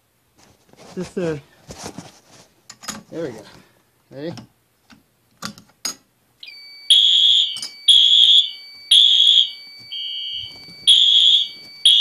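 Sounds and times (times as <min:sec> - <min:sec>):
fire alarm horn blasts: 0:06.4 - 0:12.0
steady high tone: 0:06.4 - 0:12.0.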